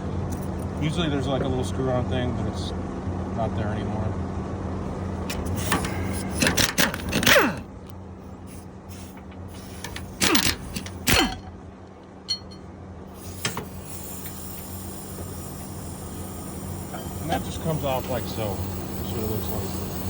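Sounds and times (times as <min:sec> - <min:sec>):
low hum: 0:04.0 - 0:20.0
impact wrench bursts: 0:05.2 - 0:07.7, 0:08.3 - 0:11.5, 0:13.1 - 0:20.0.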